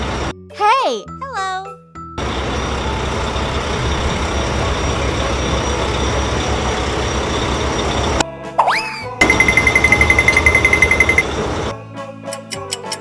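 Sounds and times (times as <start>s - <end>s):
truck engine rumble: 2.2s - 8.2s.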